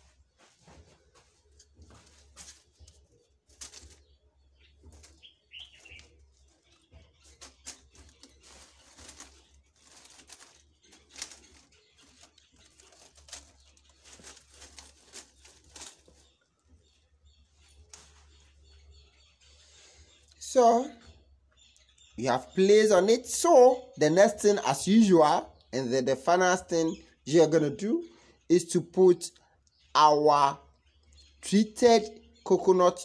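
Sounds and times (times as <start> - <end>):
wire mesh rustling and scraping: 0.0 - 18.8.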